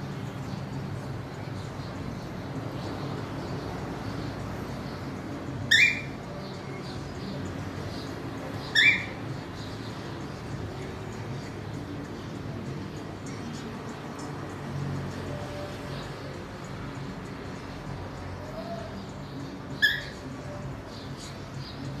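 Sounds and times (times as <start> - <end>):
cockatiel rising calls: 5.7 - 6.1, 8.8 - 9.2.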